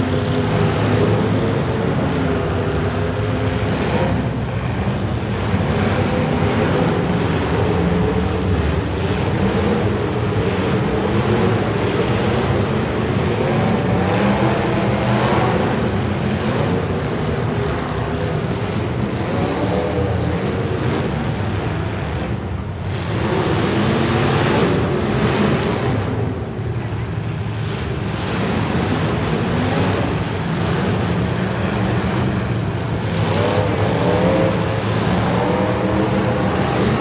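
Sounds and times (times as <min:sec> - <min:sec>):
car engines revving: 0:00.0 - 0:37.0.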